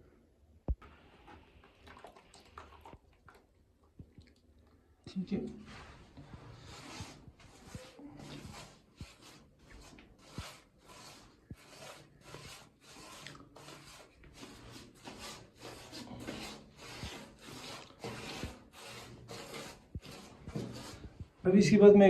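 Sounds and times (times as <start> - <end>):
trowel scraping cement on wall: 5.7 - 21.3.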